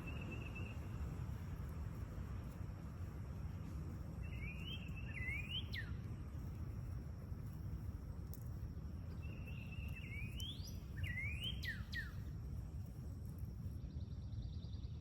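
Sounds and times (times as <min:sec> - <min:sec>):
bird singing whistles: 0:00.0 - 0:00.8, 0:04.2 - 0:06.0, 0:09.2 - 0:12.2.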